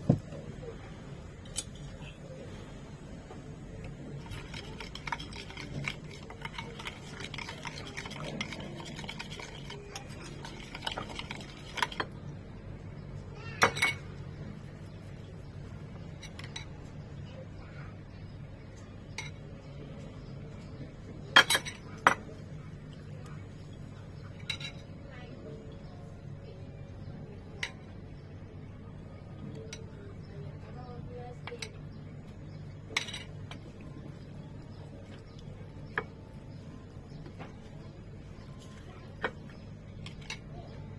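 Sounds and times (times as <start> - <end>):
steady low hum: 0.0 - 40.9
utensils and dishes clinking: 1.4 - 2.2, 3.8 - 12.2, 13.6 - 14.3, 16.0 - 16.9, 19.1 - 25.0, 27.5 - 28.1, 31.4 - 40.9
spoon stirring and scraping in bowl: 1.5 - 2.2, 3.8 - 12.2, 13.6 - 16.9, 19.2 - 25.0, 31.4 - 40.8
spoon clinking against dish: 19.1 - 19.5, 21.4 - 22.4, 24.2 - 24.9, 32.9 - 36.2.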